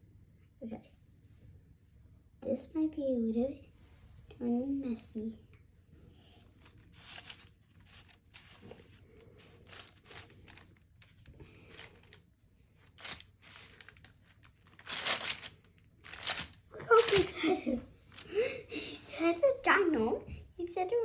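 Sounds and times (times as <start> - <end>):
sticky crackles and rustles: 6.5 - 12.2, 12.8 - 18.5.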